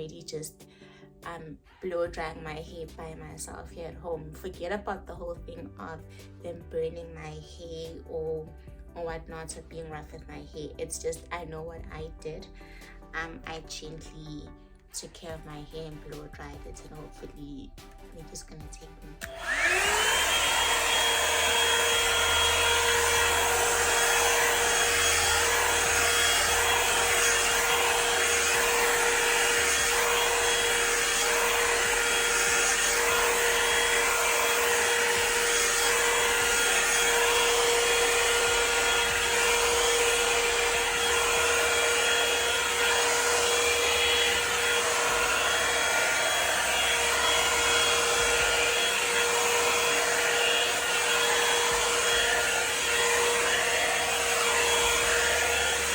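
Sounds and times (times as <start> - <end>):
hot-air dryer brush whining: 19.2 - 55.9.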